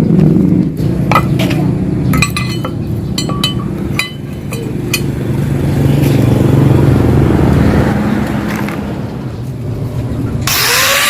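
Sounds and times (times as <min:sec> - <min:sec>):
motorcycle engine running: 0:00.0 - 0:10.5
sharp metallic taps: 0:01.1 - 0:05.2.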